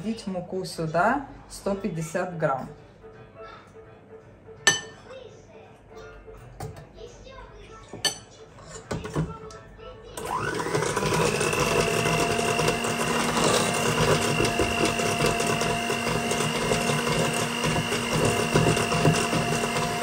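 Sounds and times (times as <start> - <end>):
electric mixer motor whine: 10.2 - 20.0
mixer clicks: 10.2 - 20.0.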